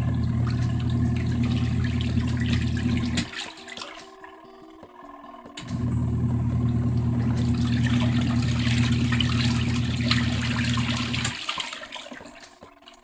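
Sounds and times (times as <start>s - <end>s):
washing machine motor hum: 0.0s - 3.4s, 5.6s - 11.8s
water sloshing in tub: 0.0s - 4.1s, 5.6s - 13.0s.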